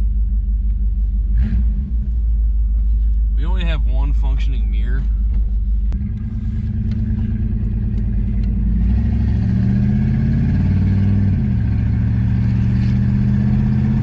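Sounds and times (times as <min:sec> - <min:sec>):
car engine pulling away: 0:05.0 - 0:14.0.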